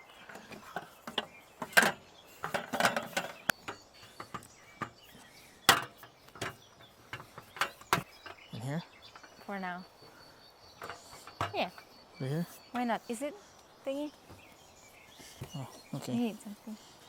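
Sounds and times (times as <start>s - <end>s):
shelf parts clicking and clattering: 0.0s - 8.5s, 10.8s - 11.8s.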